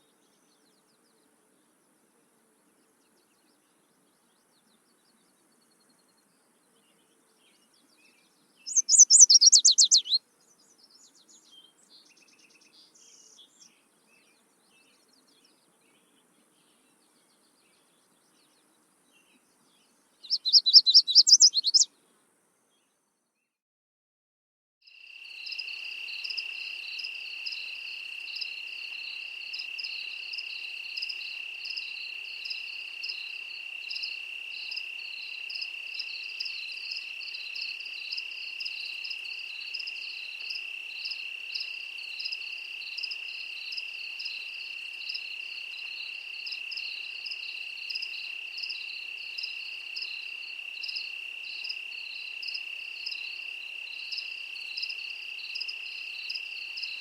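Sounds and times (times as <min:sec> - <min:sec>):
crickets trilling: 0:08.7 - 0:10.2, 0:20.3 - 0:21.9, 0:24.9 - 0:57.0
pulsing cricket chirp: 0:08.7 - 0:10.2, 0:20.3 - 0:21.9, 0:24.9 - 0:57.0.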